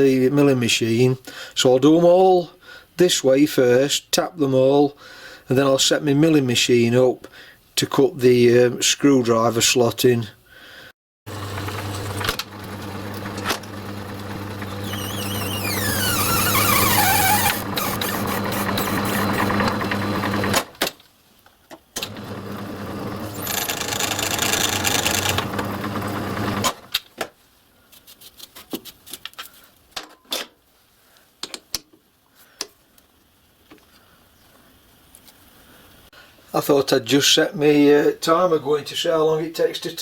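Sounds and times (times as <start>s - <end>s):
lathe motor hum: 11.3s - 20.6s, 22.0s - 26.7s
high squeal: 14.8s - 19.8s.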